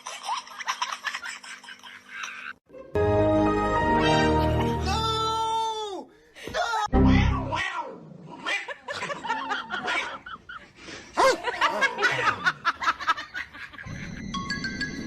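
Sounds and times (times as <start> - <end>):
people laughing and giggling: 8.7 - 14.2.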